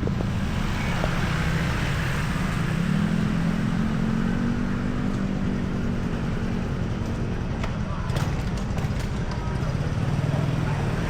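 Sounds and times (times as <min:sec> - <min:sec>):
vehicle engines running: 0:00.0 - 0:11.0.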